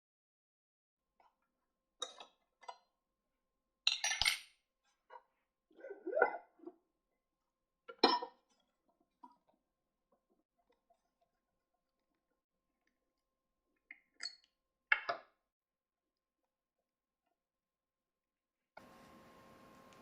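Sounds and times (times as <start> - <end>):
small tools clinking on a bench: 3.9 - 4.5.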